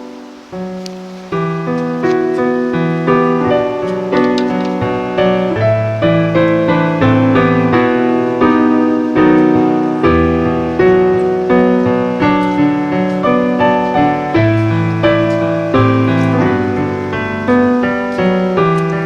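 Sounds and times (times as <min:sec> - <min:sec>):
gentle piano music: 0:00.0 - 0:19.0.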